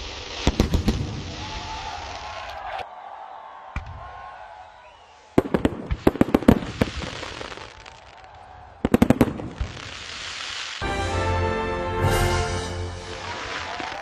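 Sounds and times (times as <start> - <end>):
fireworks bangs: 0.0 - 2.8, 5.1 - 11.2, 12.3 - 14.0
music with sustained tones: 10.8 - 13.3.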